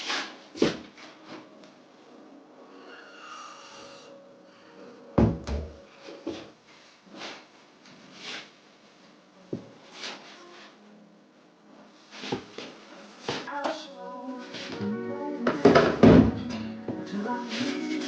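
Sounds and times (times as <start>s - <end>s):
knocks on workbench: 5.2s - 5.8s, 15.5s - 16.4s.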